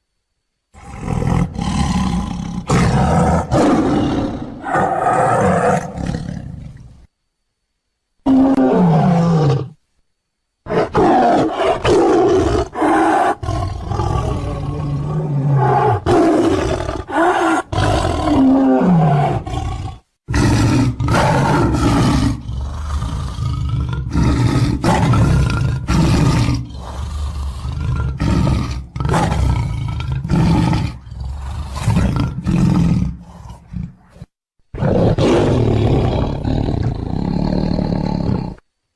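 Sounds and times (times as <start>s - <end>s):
large beast roaring: 10.7s - 38.6s.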